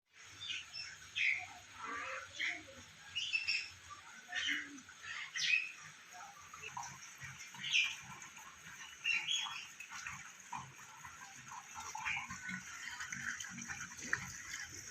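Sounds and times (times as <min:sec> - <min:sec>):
birds chirping and squawking: 0:00.2 - 0:14.7.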